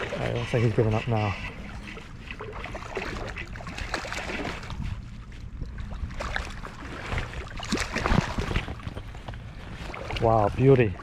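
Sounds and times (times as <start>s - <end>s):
creek water running: 0.0s - 5.0s, 5.6s - 11.0s
wind rumbling on microphone: 0.0s - 11.0s
small knocks and splashes: 2.3s - 4.8s, 5.7s - 11.0s.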